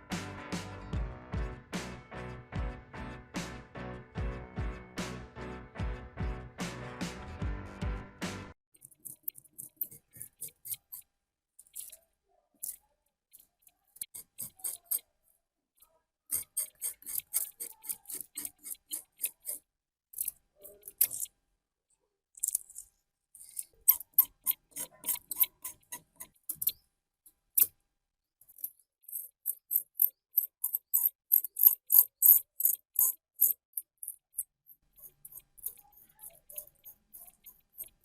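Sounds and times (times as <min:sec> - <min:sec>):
rapid scraping strokes: 0:16.3 - 0:19.7.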